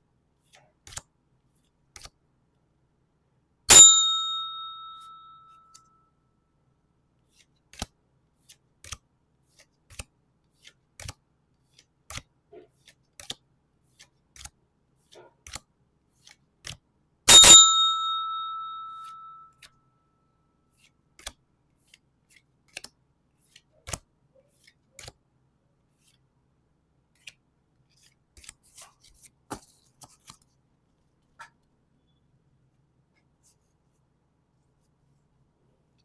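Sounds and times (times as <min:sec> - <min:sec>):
loud metallic ding: 0:03.7 - 0:04.9, 0:17.3 - 0:18.8
cards being handled: 0:27.9 - 0:30.5.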